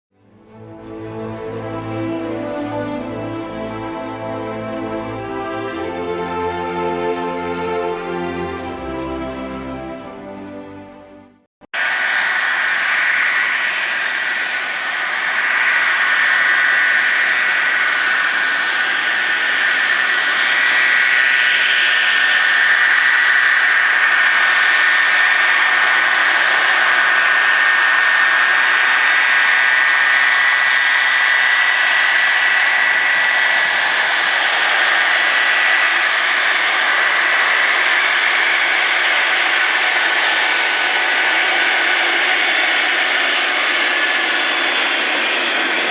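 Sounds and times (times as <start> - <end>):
jet engine roar with whine: 11.8 - 45.9.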